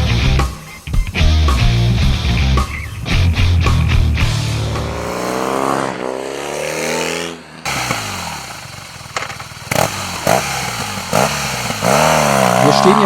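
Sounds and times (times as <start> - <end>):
motorcycle engine revving: 1.5 - 13.0
engine cracks: 7.6 - 13.0.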